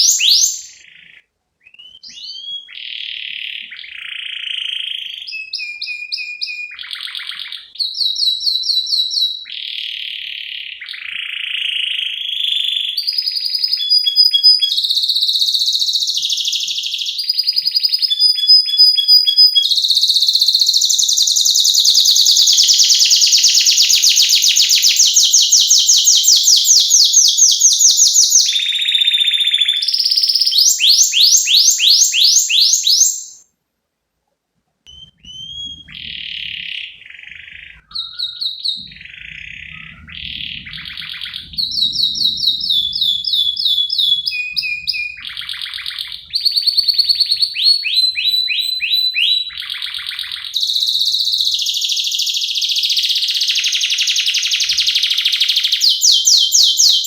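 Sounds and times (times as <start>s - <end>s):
canary singing: 0.0s - 33.5s, 34.9s - 57.0s.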